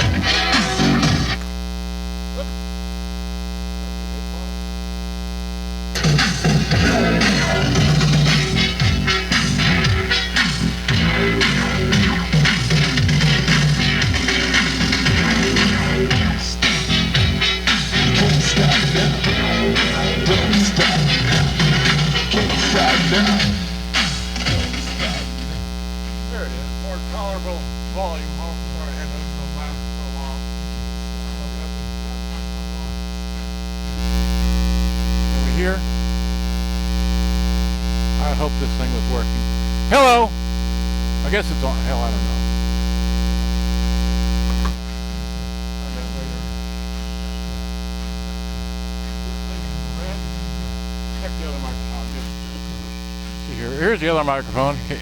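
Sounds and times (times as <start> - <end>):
steady mains hum: 0.0 - 55.0.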